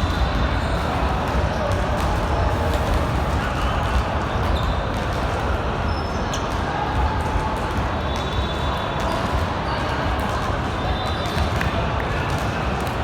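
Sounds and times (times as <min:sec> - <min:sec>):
steady background noise: 0:00.0 - 0:13.0
sneaker squeaks: 0:04.5 - 0:05.1, 0:05.9 - 0:06.6.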